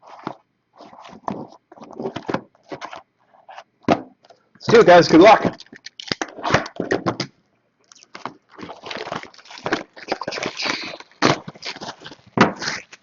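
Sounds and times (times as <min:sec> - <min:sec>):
plastic shrink-wrap crinkling and tearing: 0:05.6 - 0:06.8, 0:07.9 - 0:13.0.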